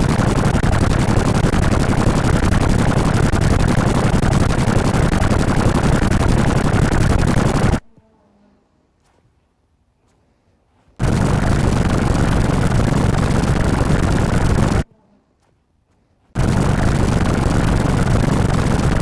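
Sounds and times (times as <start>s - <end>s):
rapid harsh crackling: 0.0s - 7.9s, 11.0s - 14.9s, 16.4s - 19.0s.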